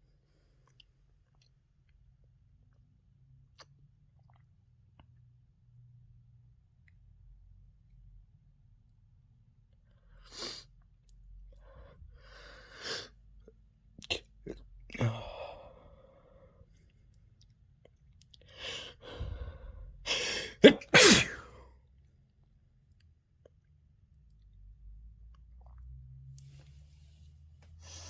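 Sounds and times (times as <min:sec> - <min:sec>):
person sniffing: 0:10.2 - 0:10.7, 0:12.4 - 0:13.2, 0:18.6 - 0:21.5, 0:27.8 - 0:28.0
person sneezing: 0:20.1 - 0:21.6.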